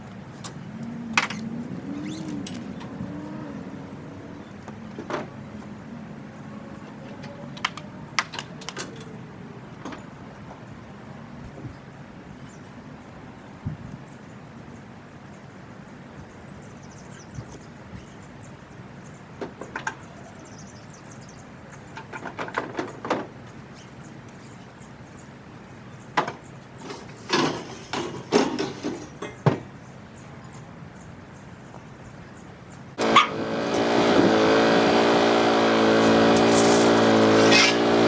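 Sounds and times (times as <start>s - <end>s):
tools clicking and knocking: 7.1s - 9.2s
motor running: 33.0s - 38.0s.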